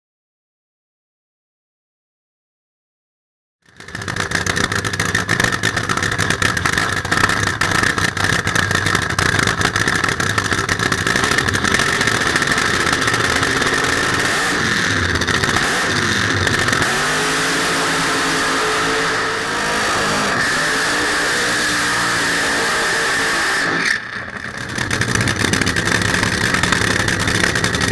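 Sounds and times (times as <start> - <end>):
race car engine crackling idle: 3.7 - 17.1, 24.1 - 27.9
engine revving: 3.7 - 27.9.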